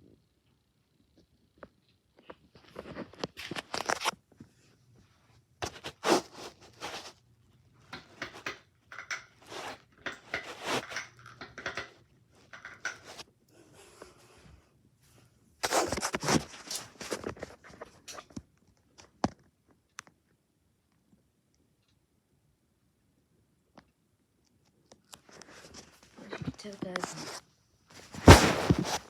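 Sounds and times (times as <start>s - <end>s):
scraping and rustling: 1.7s - 7.2s, 7.9s - 13.2s, 15.1s - 18.3s, 25.2s - 29.0s.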